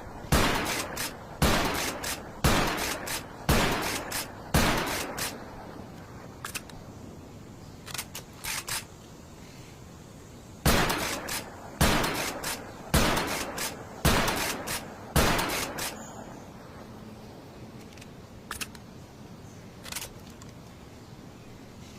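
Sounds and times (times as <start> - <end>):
loud shotgun shots: 0.3 - 5.4, 10.6 - 16.0
mechanical clicks: 17.8 - 18.9.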